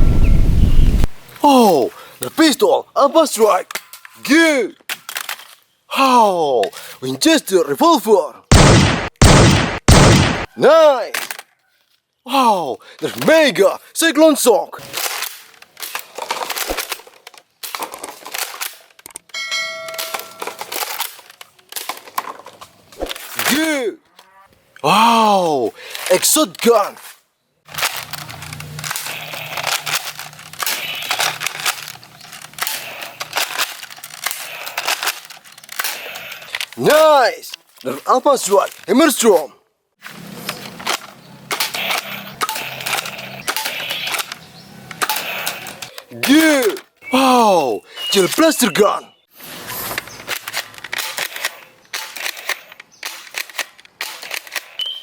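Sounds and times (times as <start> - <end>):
plastic crinkling: 27.7 - 36.9
toy gun clicks and pops: 50.2 - 55.0.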